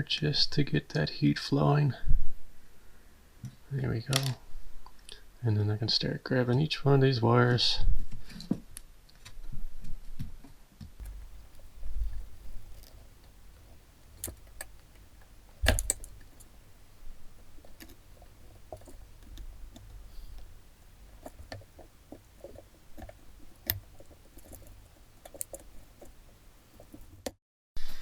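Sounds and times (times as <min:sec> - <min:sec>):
clicks and metallic taps of wires: 0:11.0 - 0:27.4.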